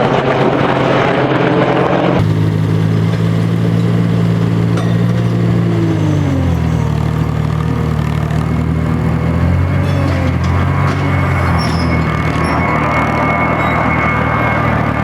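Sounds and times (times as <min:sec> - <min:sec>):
aircraft engines droning: 0:00.0 - 0:15.0.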